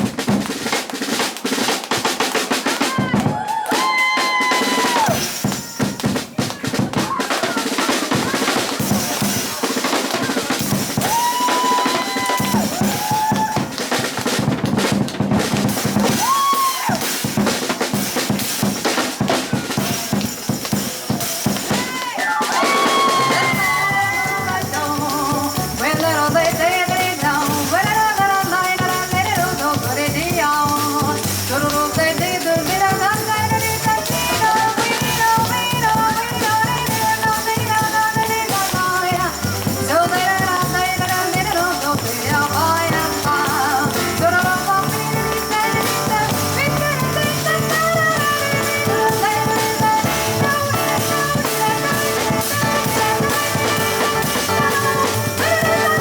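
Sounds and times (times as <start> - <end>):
jazz drum solo: 0.0 - 56.0
piano: 22.5 - 56.0
double bass: 23.5 - 56.0.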